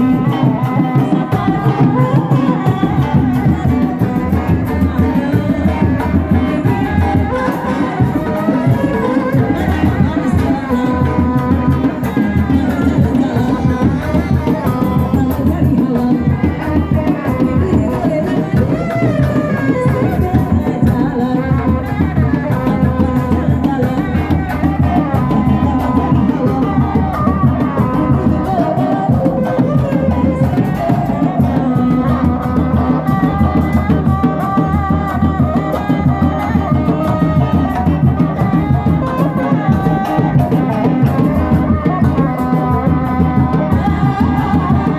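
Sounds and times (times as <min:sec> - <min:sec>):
gamelan percussion: 0:00.0 - 0:44.9
hand drums: 0:00.0 - 0:44.9.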